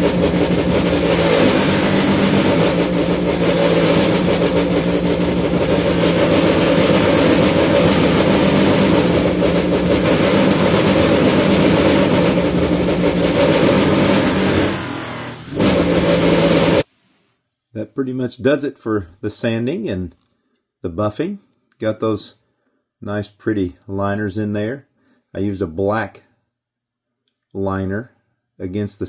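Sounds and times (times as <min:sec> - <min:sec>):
bench buffer humming: 0:00.0 - 0:16.8.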